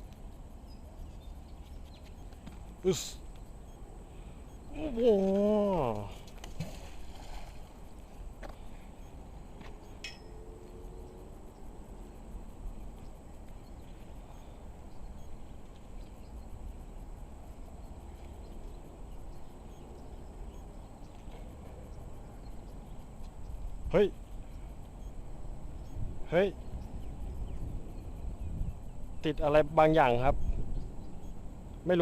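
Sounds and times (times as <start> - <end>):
faint clicks: 0.0 - 0.4.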